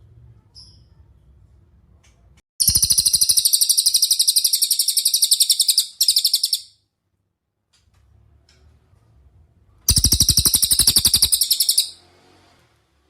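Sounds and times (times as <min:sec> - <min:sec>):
songbird high-pitched trill: 0:02.6 - 0:06.7, 0:09.9 - 0:12.0.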